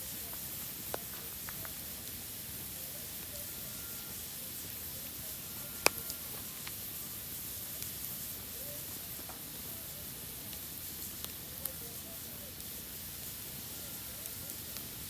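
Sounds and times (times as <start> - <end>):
campfire pop: 0.0 - 2.2, 5.8 - 6.9
campfire crackling: 0.0 - 15.0.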